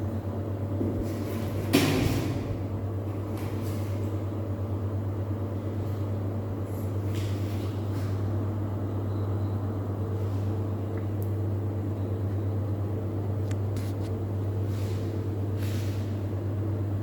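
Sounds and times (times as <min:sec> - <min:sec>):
steady low hum: 0:00.0 - 0:17.0
faint scratches and rustles: 0:13.7 - 0:15.0.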